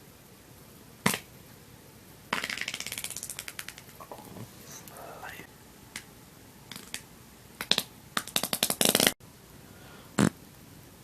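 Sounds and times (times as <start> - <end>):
human farts: 7.7 - 9.2, 10.2 - 10.4.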